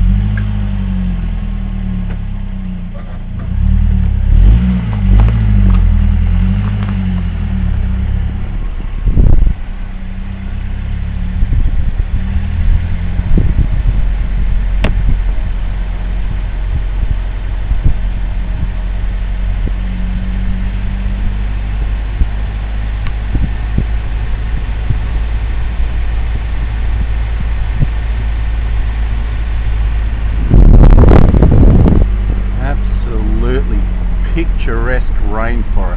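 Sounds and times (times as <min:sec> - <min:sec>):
car engine and road drone: 0:00.0 - 0:35.9
sudden loud burst of noise: 0:23.0 - 0:35.9.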